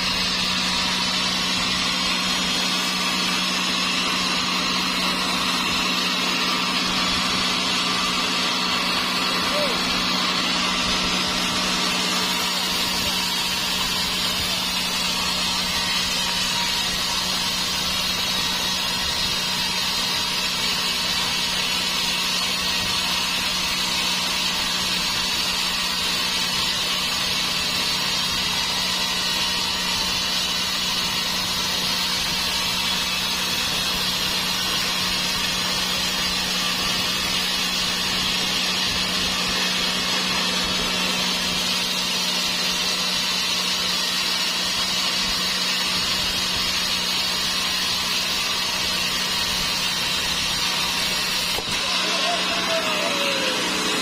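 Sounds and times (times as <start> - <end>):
low machine hum: 0.0 - 20.0
saw cutting through log: 0.0 - 54.0.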